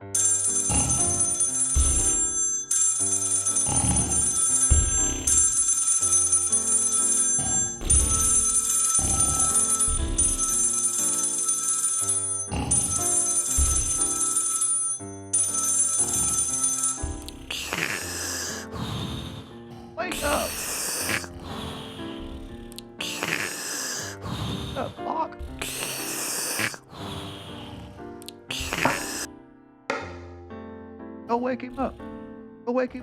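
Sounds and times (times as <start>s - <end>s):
bell ringing: 0.0s - 17.5s
cartoon music: 0.2s - 17.9s.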